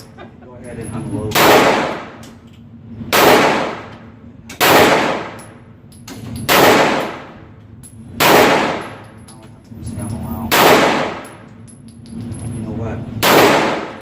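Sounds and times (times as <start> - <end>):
gunshots: 1.4 - 2.2, 3.1 - 3.9, 4.6 - 5.4, 6.5 - 7.4, 8.2 - 9.0, 10.5 - 11.4, 13.2 - 14.0.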